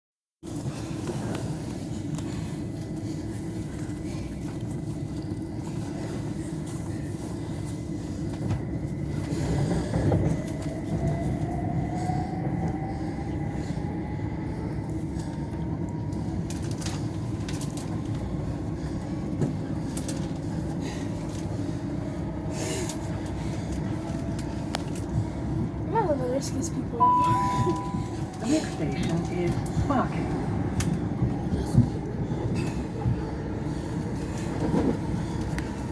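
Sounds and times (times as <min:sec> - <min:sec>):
train wheels rumbling: 0:00.6 - 0:35.9.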